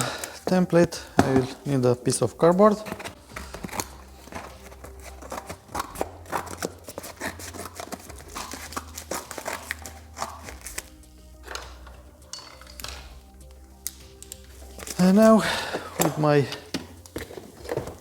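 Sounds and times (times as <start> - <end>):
background music: 0.0 - 18.0
cardboard clicks and rustles: 2.6 - 11.9, 13.9 - 18.0.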